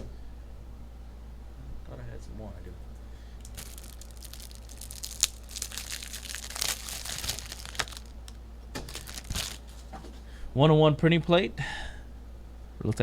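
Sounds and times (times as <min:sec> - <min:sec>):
plastic wrapping crinkling and tearing: 0:03.4 - 0:09.8.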